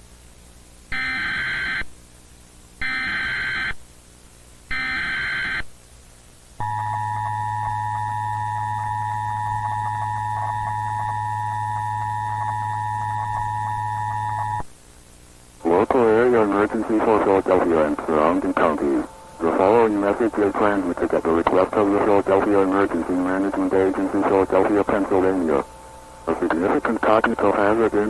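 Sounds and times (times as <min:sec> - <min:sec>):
low hum: 0:06.6 - 0:28.0.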